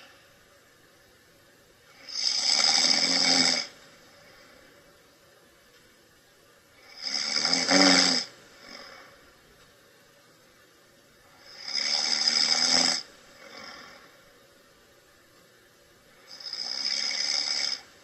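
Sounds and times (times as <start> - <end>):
person snoring: 1.9 - 4.6, 6.8 - 9.2, 11.3 - 14.2, 16.2 - 18.0.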